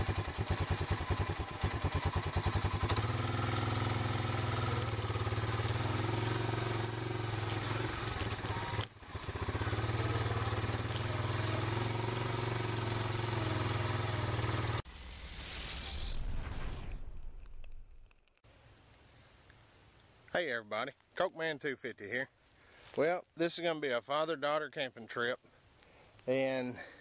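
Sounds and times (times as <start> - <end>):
vehicle engine running: 0.0 - 14.8.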